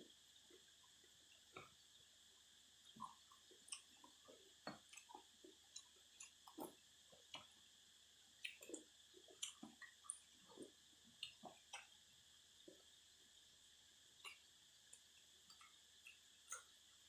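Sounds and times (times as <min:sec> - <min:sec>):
person chewing: 0:02.9 - 0:07.5, 0:08.4 - 0:11.9.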